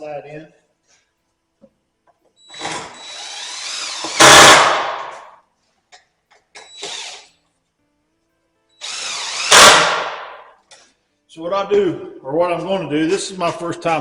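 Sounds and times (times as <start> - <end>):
power driver driving screws: 2.4 - 5.2, 6.6 - 7.3, 8.8 - 10.3.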